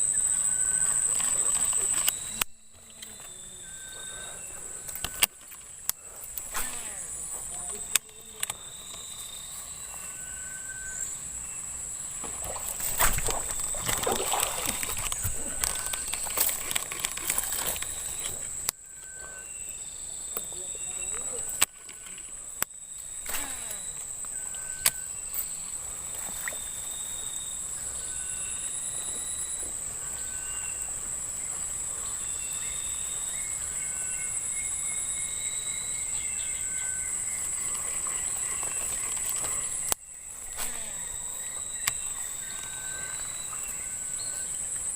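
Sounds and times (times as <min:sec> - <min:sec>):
high-pitched insect drone: 0:00.0 - 0:44.9
sharp clicks and rustling: 0:12.8 - 0:18.8.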